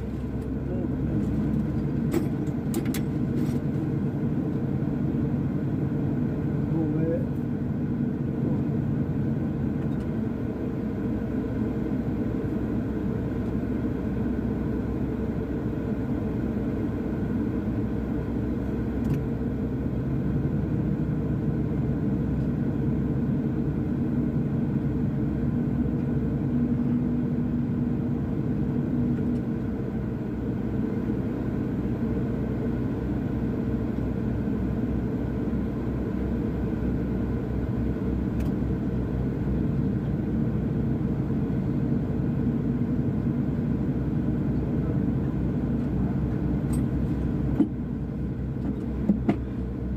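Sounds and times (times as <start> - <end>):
diesel engine rumbling: 0.0 - 49.9
click: 38.4 - 38.6.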